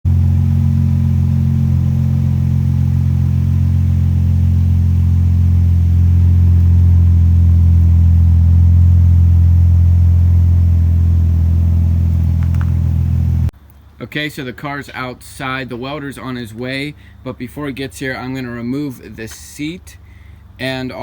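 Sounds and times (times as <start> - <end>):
engine idling: 0.0 - 13.5.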